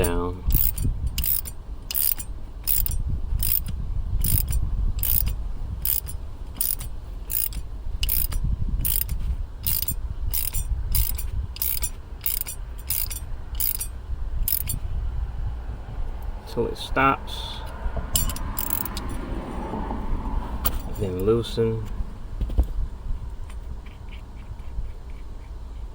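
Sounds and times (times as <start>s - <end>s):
ratchet clicking: 0.0s - 14.8s, 18.1s - 19.2s
low rumble of handling: 0.0s - 25.9s.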